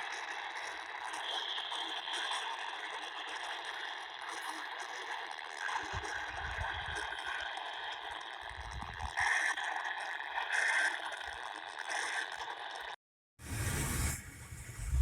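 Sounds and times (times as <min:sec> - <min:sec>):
radio static hiss: 0:00.0 - 0:03.7
short data bursts: 0:00.1 - 0:04.4.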